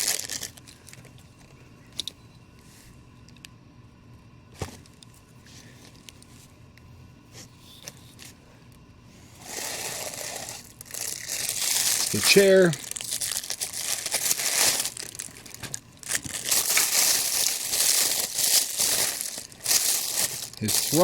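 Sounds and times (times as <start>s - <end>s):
plastic crinkling: 0.0s - 1.2s, 9.4s - 21.0s.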